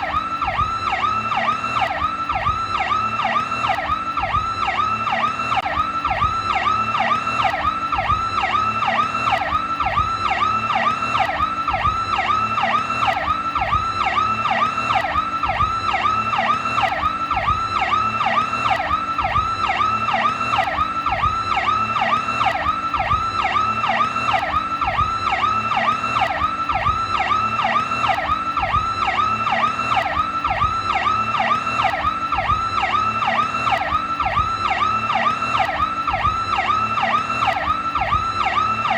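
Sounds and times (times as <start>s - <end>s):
police siren yelp: 0.0s - 38.9s.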